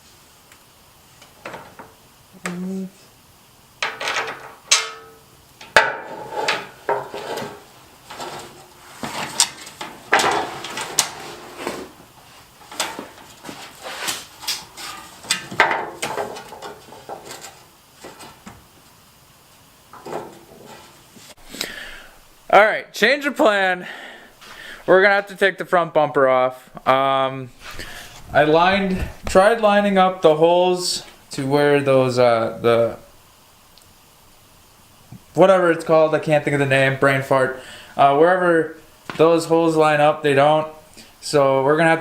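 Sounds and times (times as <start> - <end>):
hard parts and tools clattering: 3.8 - 11.3.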